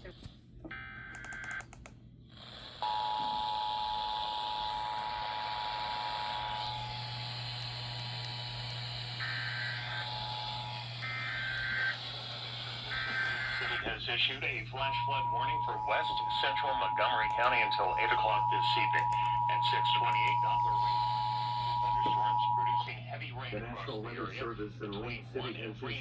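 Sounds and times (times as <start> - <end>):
higher data tone bursts: 9.2 - 13.9, 14.7 - 23.0
screeching digital data bursts: 9.2 - 13.9.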